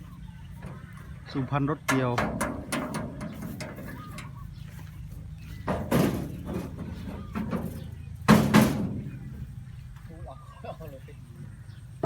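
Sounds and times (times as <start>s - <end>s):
low engine hum: 0.0s - 12.0s
loud bangs: 1.8s - 4.4s, 5.6s - 9.6s.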